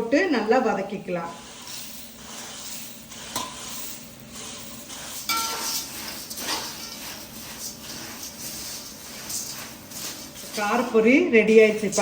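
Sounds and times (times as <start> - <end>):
spoon scraping puffed rice in pan: 1.3 - 12.0
spoon clinking against pan: 5.3 - 5.8.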